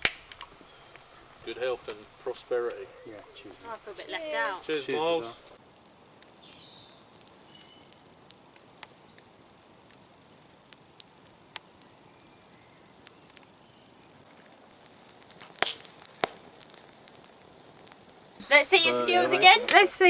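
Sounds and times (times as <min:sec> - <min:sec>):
sharp clicks and crackles: 0:05.5 - 0:18.4.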